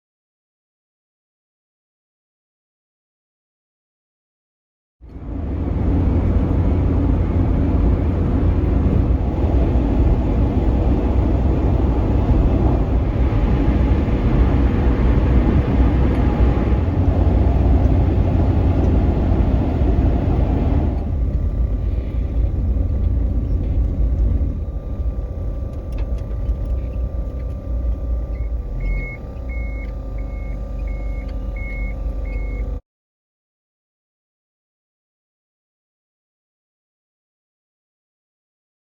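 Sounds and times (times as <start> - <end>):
car road noise: 5.0 - 32.8
short high beeps: 28.4 - 32.7.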